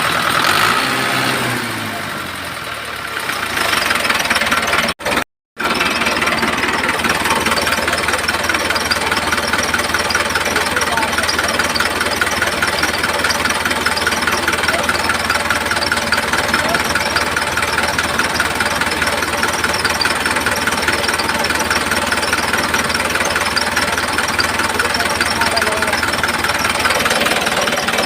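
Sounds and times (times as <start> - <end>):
small motor rattling buzz: 5.6 - 28.0.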